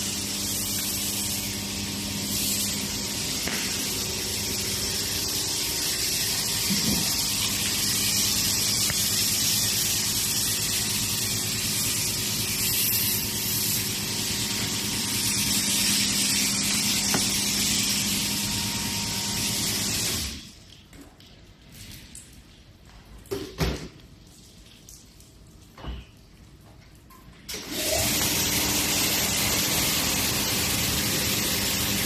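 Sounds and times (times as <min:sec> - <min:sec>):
high-pressure water jet spraying: 0:00.0 - 0:20.5, 0:27.5 - 0:32.0
pump humming: 0:00.0 - 0:20.6, 0:27.5 - 0:32.0.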